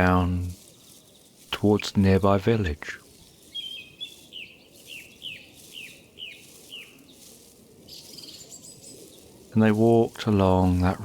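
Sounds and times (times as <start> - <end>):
songbird falling chirps: 3.2 - 9.3.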